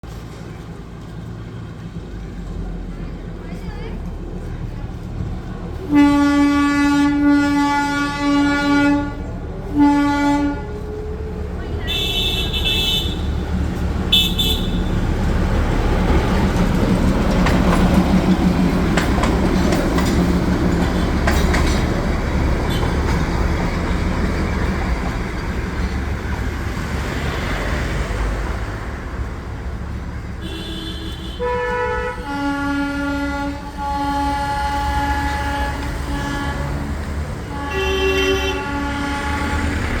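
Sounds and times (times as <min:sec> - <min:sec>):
train horn toots: 0:05.8 - 0:11.2, 0:11.8 - 0:15.2, 0:22.6 - 0:23.2, 0:30.4 - 0:40.0.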